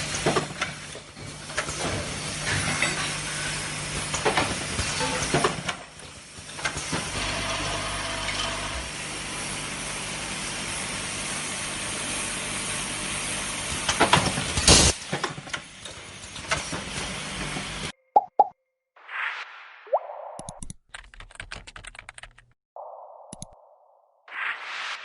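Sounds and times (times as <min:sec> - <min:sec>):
machinery humming and hissing: 0:00.0 - 0:17.9
clicks: 0:23.3 - 0:23.6.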